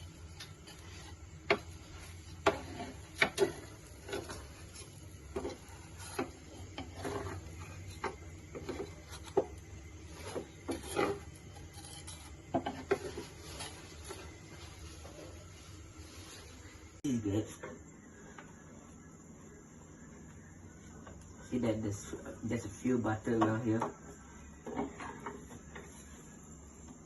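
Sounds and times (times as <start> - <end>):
utensil scraping a frying pan: 0.0 - 15.5.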